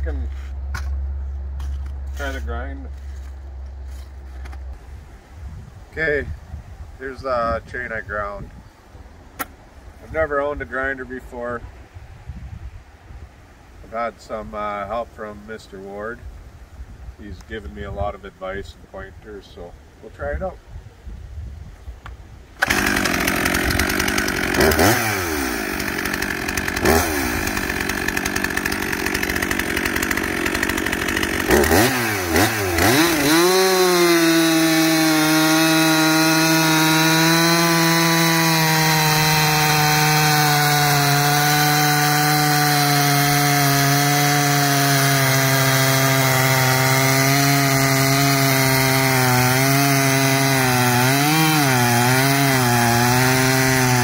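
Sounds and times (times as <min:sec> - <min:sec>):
chainsaw cutting into log: 0:22.6 - 0:54.0
chainsaw revving: 0:22.6 - 0:54.0.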